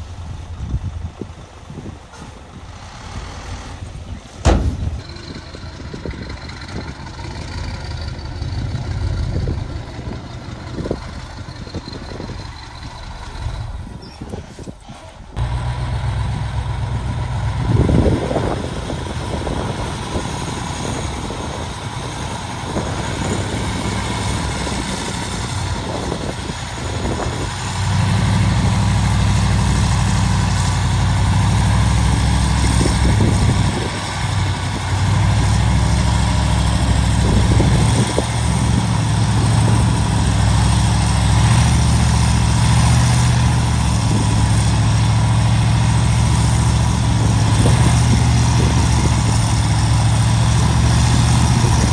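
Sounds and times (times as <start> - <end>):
heavy diesel engine running: 0.0 - 51.9
knocks: 4.4 - 5.0.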